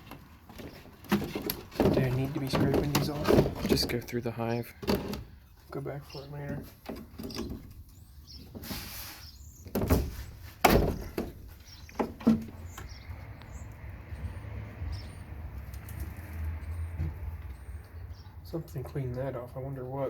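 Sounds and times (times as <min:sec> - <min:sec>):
wooden hive frames scraping: 0:00.0 - 0:13.6.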